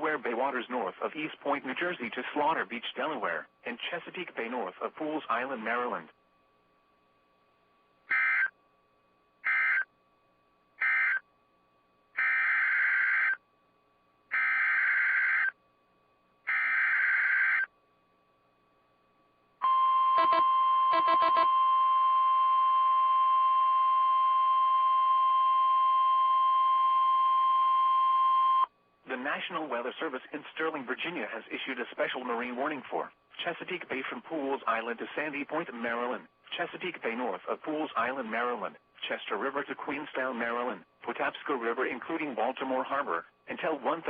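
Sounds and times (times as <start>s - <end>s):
steady warning alarm tone: 8.1s - 8.6s, 9.4s - 10.0s, 10.8s - 11.3s, 12.2s - 13.4s, 14.3s - 15.6s, 16.5s - 17.7s, 19.6s - 28.7s.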